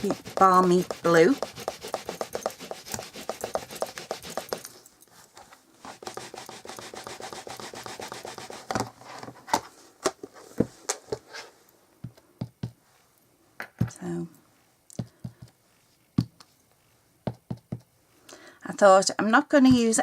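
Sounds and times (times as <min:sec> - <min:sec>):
stamp dabbing on ink pad: 0:00.0 - 0:04.7, 0:06.0 - 0:08.6
stamp rubbing on cardstock: 0:00.0 - 0:04.7, 0:05.9 - 0:08.8
stamp tapping: 0:00.0 - 0:04.7.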